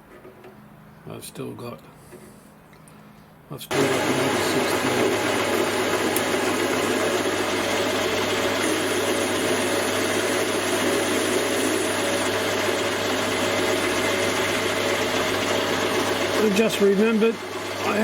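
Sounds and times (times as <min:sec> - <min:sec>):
metal lathe humming: 0:03.7 - 0:18.0.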